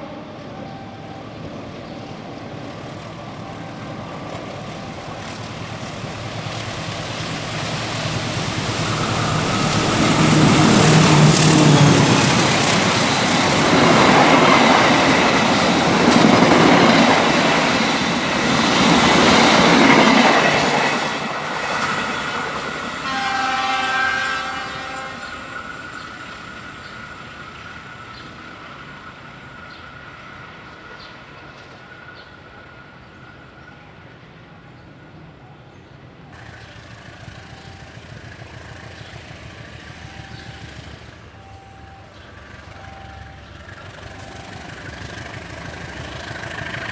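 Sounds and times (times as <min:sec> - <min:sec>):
train wheels rumbling on rails: 0:01.3 - 0:34.1, 0:36.3 - 0:46.9
train horn: 0:08.9 - 0:12.6, 0:23.0 - 0:26.0.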